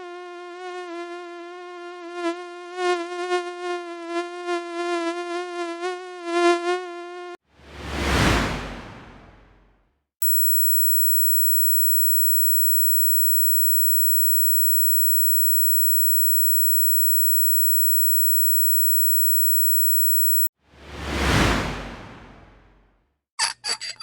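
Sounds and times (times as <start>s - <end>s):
high-pitched electronic tone: 10.2s - 20.5s.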